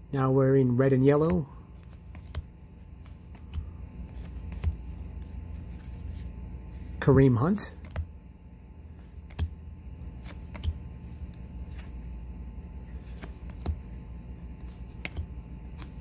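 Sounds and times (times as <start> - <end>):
low steady hum: 0.0 - 16.0
cards clicking and flicking: 1.1 - 6.3, 7.7 - 8.2, 8.9 - 12.2, 12.8 - 16.0.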